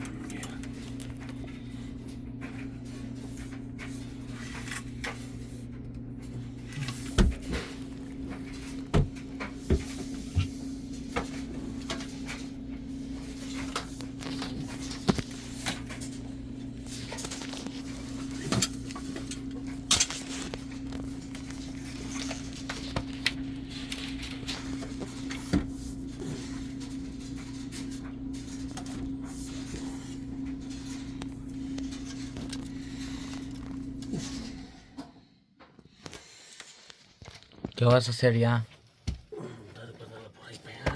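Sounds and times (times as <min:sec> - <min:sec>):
steady motor hum: 0:00.0 - 0:35.3.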